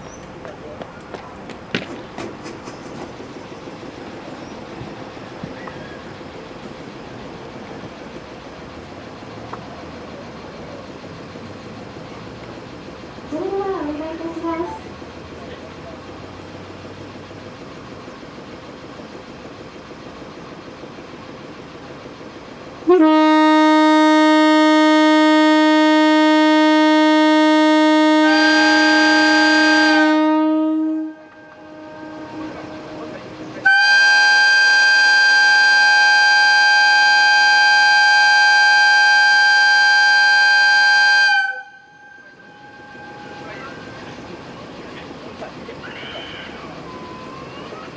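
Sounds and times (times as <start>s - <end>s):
idling train hum and hiss: 0.0s - 47.9s
train air whistle blast: 22.8s - 44.6s.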